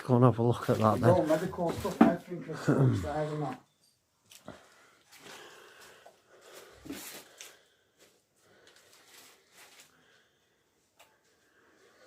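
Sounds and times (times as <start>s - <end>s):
faint footsteps: 0.5s - 2.6s
clothing rustle: 5.0s - 10.4s.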